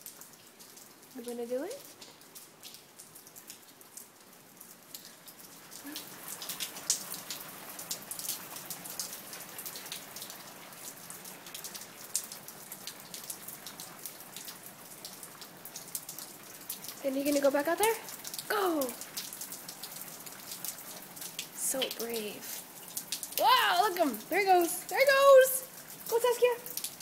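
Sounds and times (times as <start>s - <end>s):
rain dripping on hard surface: 0.0s - 27.0s.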